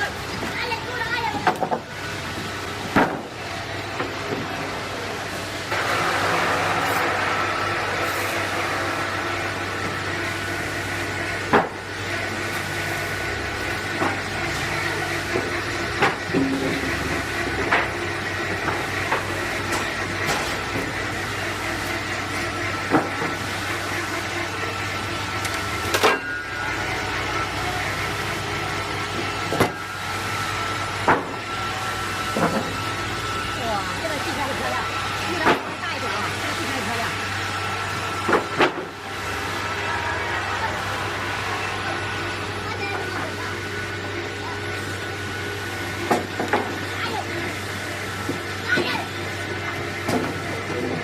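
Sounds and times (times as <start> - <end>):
sawmill machinery humming: 0.0 - 51.0
steady high tone: 39.0 - 45.8.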